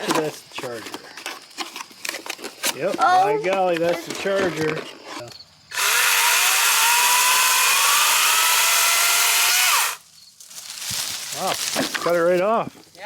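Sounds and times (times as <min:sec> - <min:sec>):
chainsaw cutting wood: 0:05.7 - 0:10.0.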